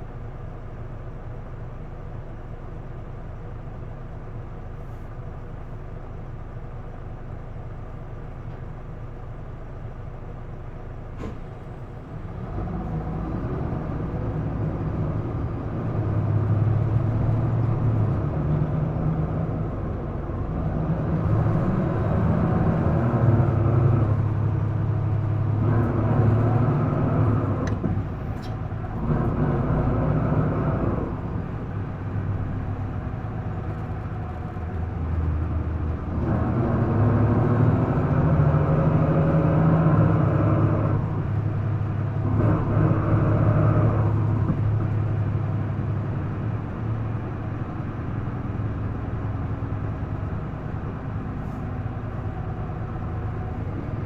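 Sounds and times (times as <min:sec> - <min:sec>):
bus diesel engine idling: 0:00.0 - 0:54.0
bus engine revving through gears: 0:11.0 - 0:54.0.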